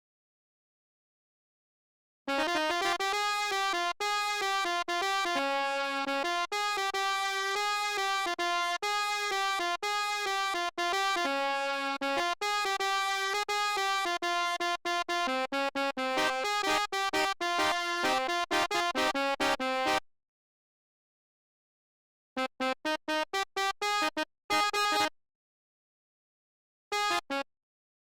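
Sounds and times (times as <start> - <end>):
bus horn melody: 2.3 - 20.0, 22.6 - 25.1, 26.9 - 27.4.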